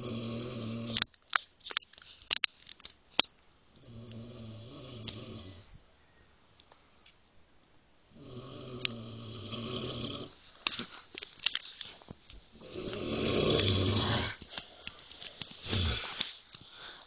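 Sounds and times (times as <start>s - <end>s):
man snoring: 0.0s - 1.0s, 3.8s - 5.8s, 8.1s - 10.4s, 12.6s - 14.4s, 15.6s - 16.2s.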